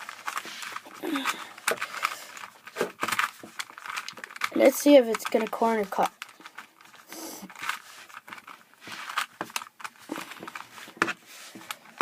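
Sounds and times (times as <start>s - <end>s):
puzzle cube plastic clicking: 0.1s - 12.0s.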